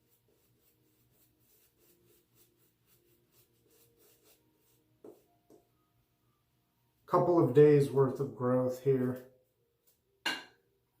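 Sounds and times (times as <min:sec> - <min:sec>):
shaving brush strokes: 0:00.0 - 0:05.4.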